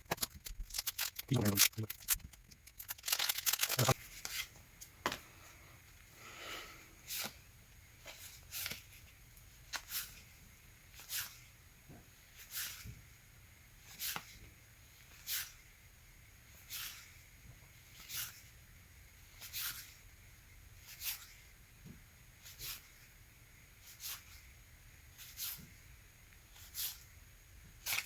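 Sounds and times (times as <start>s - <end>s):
paper cards flicking: 0.0s - 4.4s.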